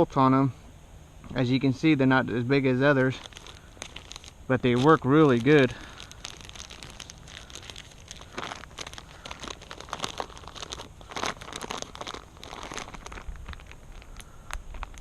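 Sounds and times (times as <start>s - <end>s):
crinkling and rustling: 3.0s - 15.0s.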